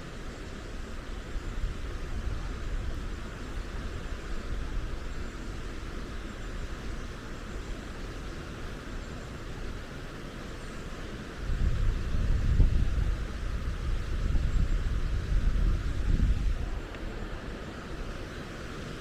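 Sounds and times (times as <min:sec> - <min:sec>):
flowing water rushing: 0:00.0 - 0:19.0
low uneven rumble: 0:11.4 - 0:18.4.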